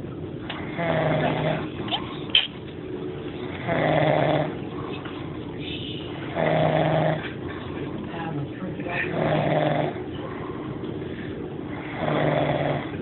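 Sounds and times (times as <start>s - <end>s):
person snoring: 0.6s - 1.7s, 3.6s - 4.6s, 6.3s - 7.4s, 9.1s - 10.6s, 11.7s - 13.0s.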